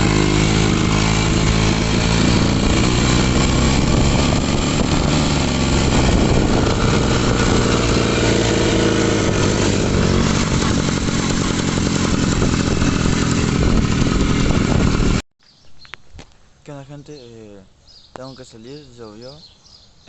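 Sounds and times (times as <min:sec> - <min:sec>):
motorcycle engine running: 0:00.0 - 0:15.2.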